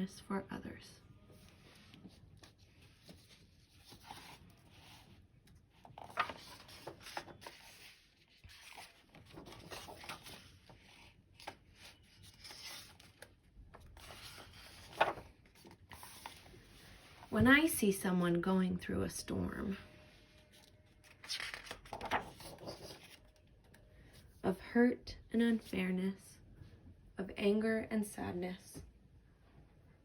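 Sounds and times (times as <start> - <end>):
book pages rustling and turning: 1.3 - 17.7, 20.3 - 23.8.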